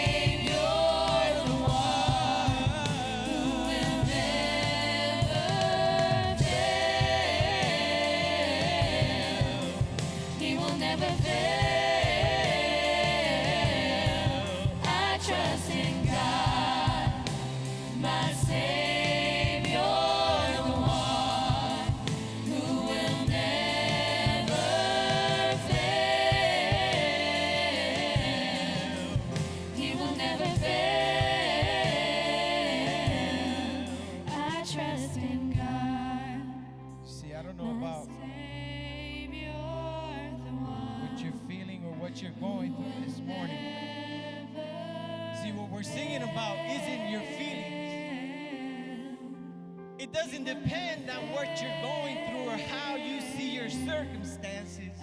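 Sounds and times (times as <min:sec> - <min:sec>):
band with steady beat: 0:00.0 - 0:34.7
group singing gospel song: 0:00.0 - 0:55.0.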